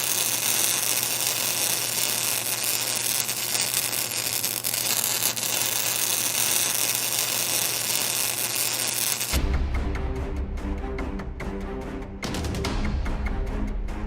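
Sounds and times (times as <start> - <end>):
faint crackles: 0.0 - 9.4
welding arc hissing: 0.0 - 9.4.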